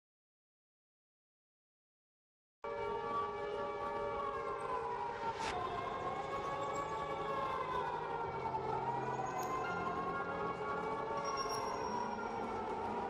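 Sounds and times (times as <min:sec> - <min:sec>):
siren slow wail: 0:02.6 - 0:13.0.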